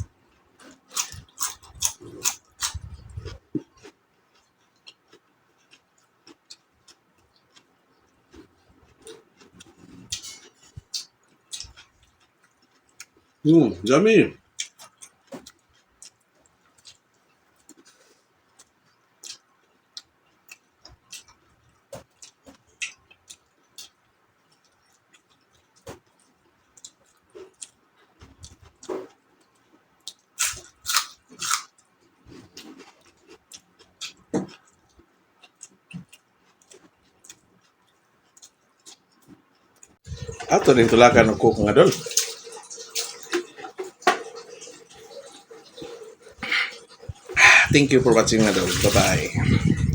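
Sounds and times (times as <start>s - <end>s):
person chewing: 0.0s - 13.4s, 14.5s - 40.5s, 42.0s - 49.9s
wet clicks and lip smacks: 45.8s - 47.8s.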